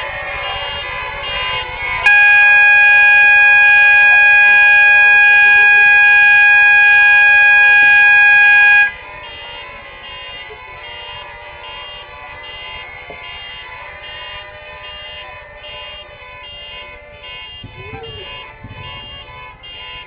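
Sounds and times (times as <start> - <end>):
fire alarm horn steady tone: 0.3 - 20.0
faint high beeping: 2.1 - 8.9.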